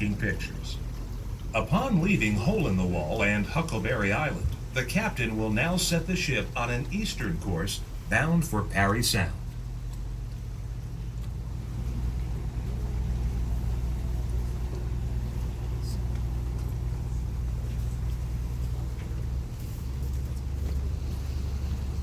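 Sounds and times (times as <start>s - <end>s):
boat engines droning: 0.0s - 22.0s.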